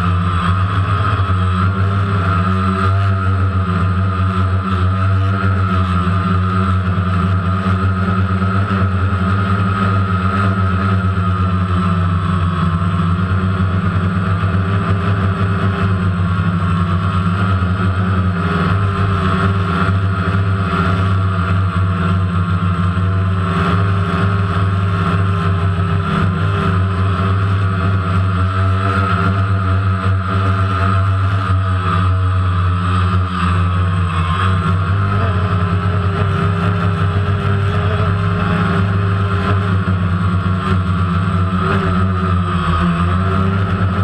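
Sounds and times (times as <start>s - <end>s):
drone propellers buzzing: 0.0s - 44.0s.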